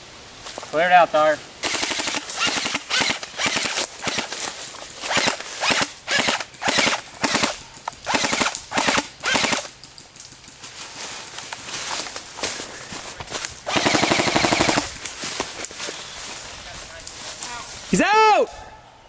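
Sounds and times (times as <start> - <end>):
airsoft guns firing bursts: 1.6 - 9.7, 13.7 - 15.0.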